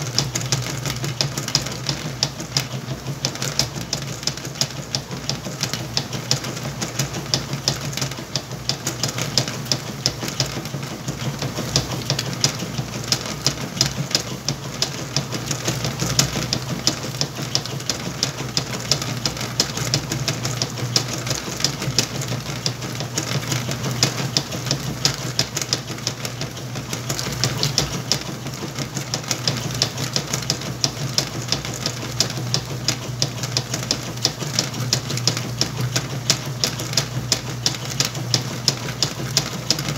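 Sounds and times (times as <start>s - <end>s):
washing machine motor hum: 0.0s - 39.9s
washing machine ticking and clattering: 0.0s - 39.9s.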